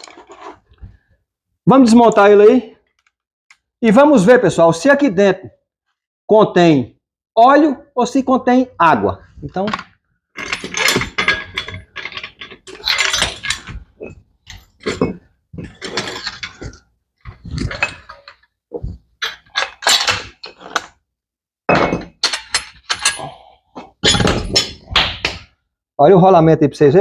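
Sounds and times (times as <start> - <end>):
tools and metal parts clanking: 0.0 - 1.0, 9.5 - 21.0, 21.7 - 24.9.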